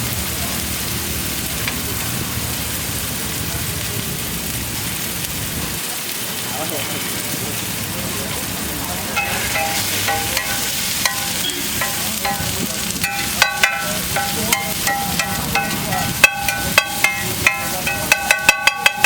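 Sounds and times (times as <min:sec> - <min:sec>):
eggs sizzling on a griddle: 0:00.0 - 0:19.0
metal spatula scraping and clinking: 0:09.2 - 0:19.0.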